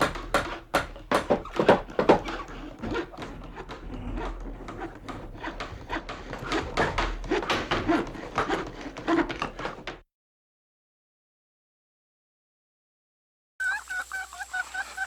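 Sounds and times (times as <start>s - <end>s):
rapid wooden knocks: 0.0s - 10.0s
rubbing and scraping: 0.0s - 10.0s.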